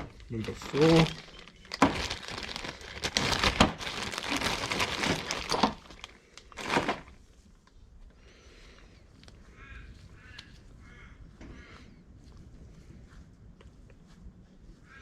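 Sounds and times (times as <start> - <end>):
plastic bag crinkling: 0.0 - 7.3.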